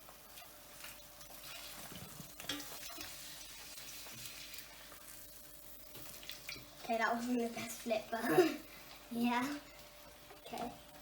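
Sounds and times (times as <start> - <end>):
egg sizzling in a pan: 0.0 - 11.0
spatula scraping and tapping: 0.8 - 3.1.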